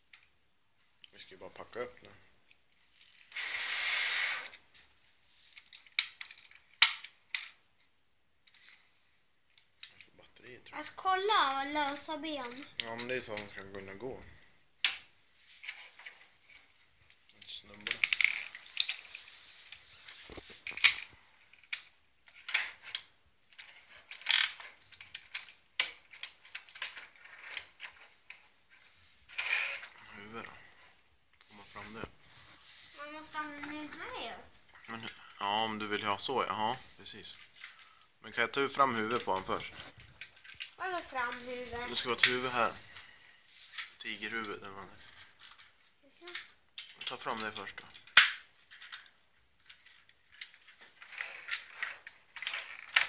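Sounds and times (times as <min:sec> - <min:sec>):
toy packaging rustling: 0:01.1 - 0:53.0
sharp plastic snaps: 0:46.3 - 0:48.5.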